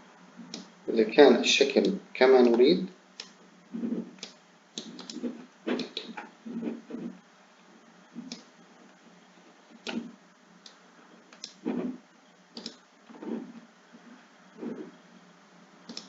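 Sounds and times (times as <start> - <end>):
faint steady hiss: 0.0 - 16.0
computer mouse clicking: 3.2 - 7.0, 8.2 - 8.5, 9.8 - 11.9, 12.5 - 13.4.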